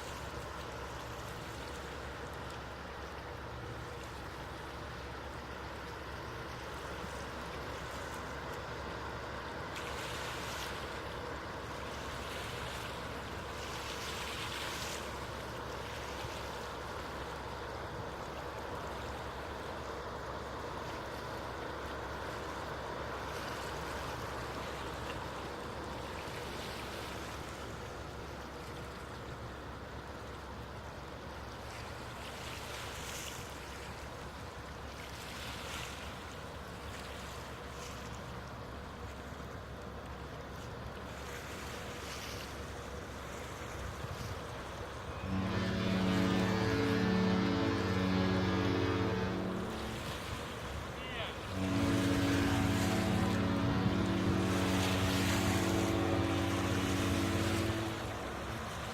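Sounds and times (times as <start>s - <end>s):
ferry engine low drone: 0.0s - 35.2s, 36.0s - 58.9s
churning water: 0.0s - 58.9s
hissy water surges: 0.0s - 58.9s.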